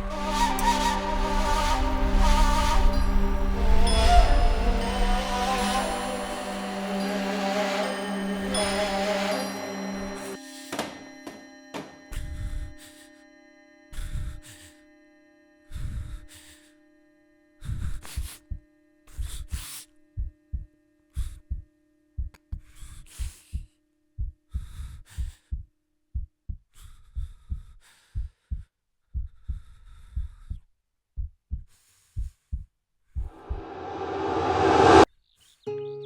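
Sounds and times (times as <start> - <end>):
swishes of higher noise: 0.0 - 10.4, 33.3 - 35.1
held low tone: 0.0 - 10.5, 33.3 - 35.1
deep heartbeat-like thuds: 20.2 - 21.6, 23.2 - 30.6, 31.2 - 33.6.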